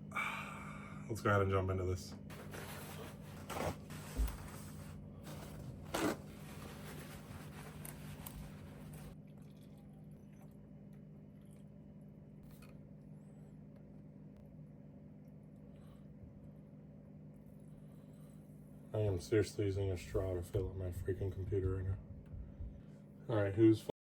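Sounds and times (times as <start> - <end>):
steady low hum: 0.0 - 23.9
hands rustling and scraping: 2.3 - 9.2.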